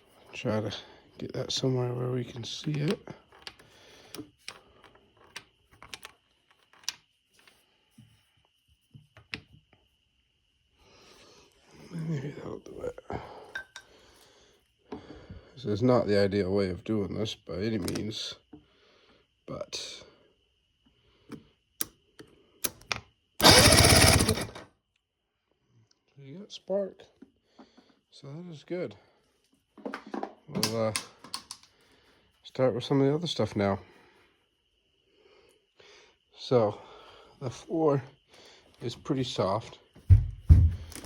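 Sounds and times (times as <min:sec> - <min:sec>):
sharp clicks: 0:23.4 - 0:24.5
outboard engine starter cranking: 0:23.4 - 0:24.6.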